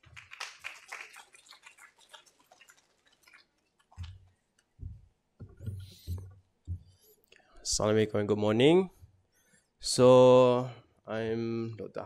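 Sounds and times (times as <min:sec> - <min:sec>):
low thump: 0:04.8 - 0:06.9.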